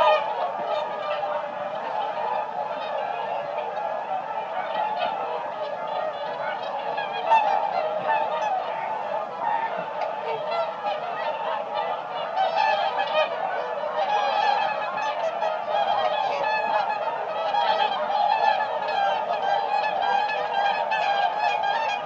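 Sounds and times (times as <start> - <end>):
swans trumpeting honks: 0.0 - 22.0.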